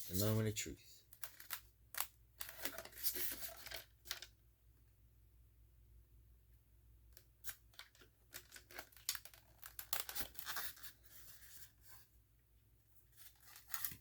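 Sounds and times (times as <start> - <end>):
packaging rustling: 1.1 - 4.3, 7.7 - 11.8, 13.2 - 14.0.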